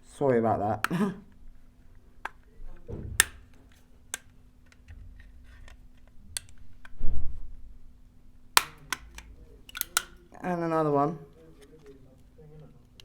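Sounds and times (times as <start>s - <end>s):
faint steady hum: 0.0s - 13.0s
plastic clicks and snaps: 2.2s - 5.0s, 5.6s - 7.0s, 8.5s - 10.3s
dull knock: 2.9s - 3.3s.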